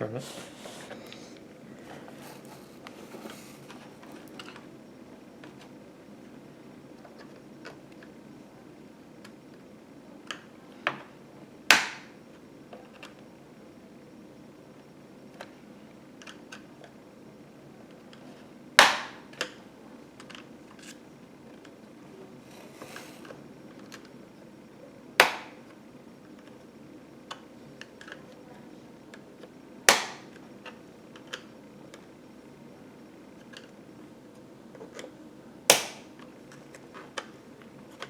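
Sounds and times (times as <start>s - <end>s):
plastic clips popping loose: 25.2s - 25.7s, 29.9s - 30.4s, 35.7s - 37.3s.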